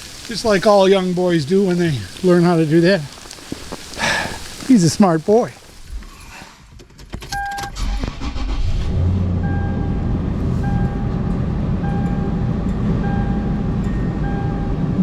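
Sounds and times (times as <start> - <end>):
car engine starting and running: 7.2 - 15.0
dashboard warning chime: 7.4 - 7.7, 9.4 - 15.0.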